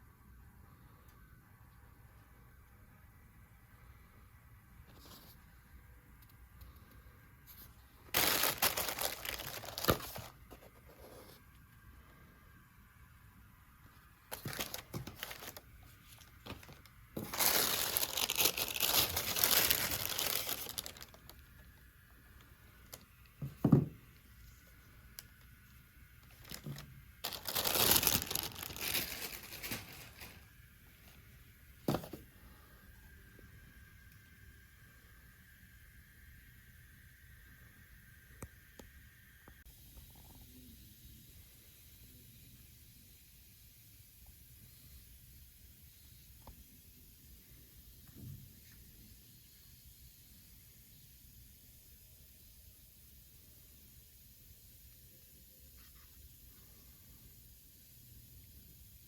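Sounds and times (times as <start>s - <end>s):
packaging rustling: 7.6s - 11.3s, 14.3s - 21.5s, 26.2s - 30.5s, 31.9s - 32.2s
packaging ripping: 8.1s - 10.4s, 14.3s - 21.4s, 26.3s - 30.4s.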